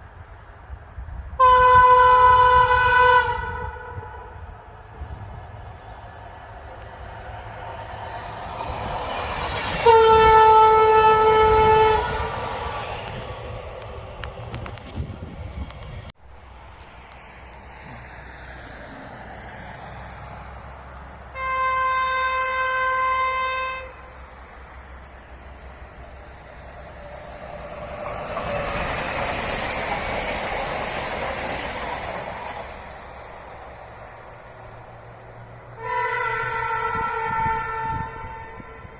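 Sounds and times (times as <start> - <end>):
train approaching at speed: 0.0 - 38.9
train air horn blast: 1.3 - 6.7, 7.4 - 12.5, 21.3 - 24.1, 35.8 - 38.9.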